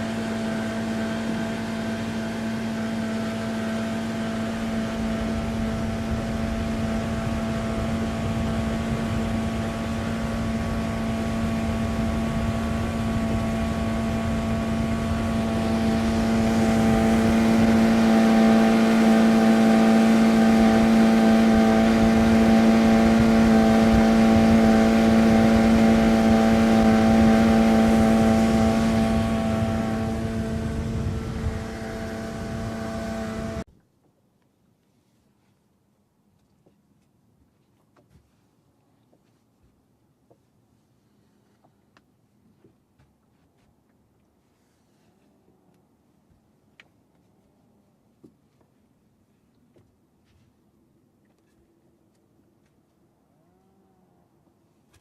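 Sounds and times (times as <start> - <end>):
boat engine running: 0.0 - 33.7.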